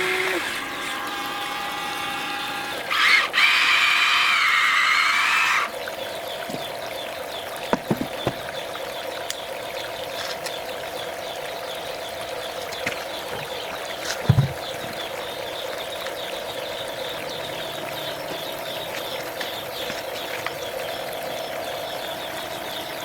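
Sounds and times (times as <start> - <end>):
water pump running: 0.0 - 9.1, 10.0 - 23.0
water trickling: 0.0 - 23.0
sharp knocks: 7.7 - 8.5, 14.2 - 15.0.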